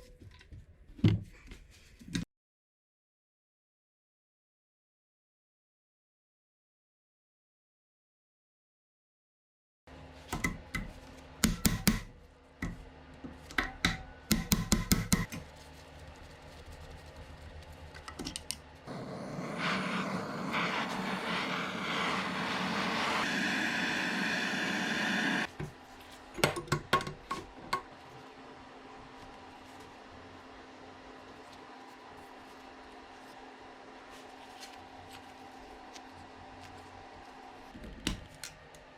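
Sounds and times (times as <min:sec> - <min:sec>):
steady hiss: 0:18.9 - 0:25.5.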